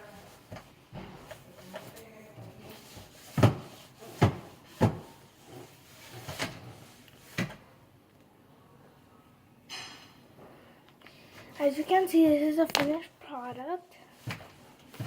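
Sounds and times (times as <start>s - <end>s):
dull knocks and thumps: 2.4s - 5.2s.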